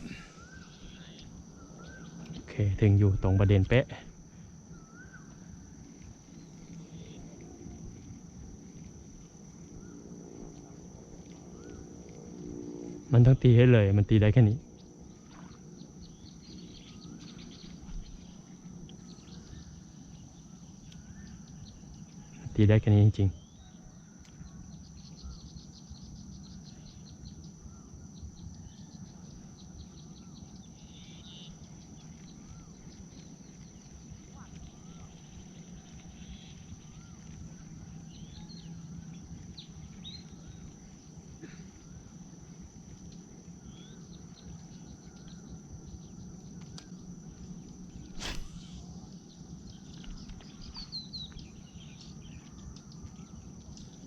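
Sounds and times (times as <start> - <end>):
bird calling: 0.0 - 2.4
insects singing: 0.0 - 54.0
low rumbling outdoor noise: 0.0 - 54.0.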